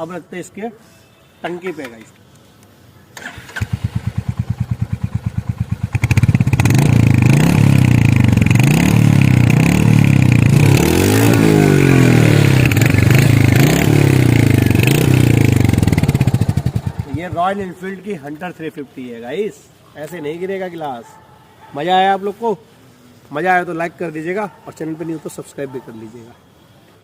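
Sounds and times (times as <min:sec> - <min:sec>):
motorcycle engine starting and revving: 0:03.2 - 0:17.6.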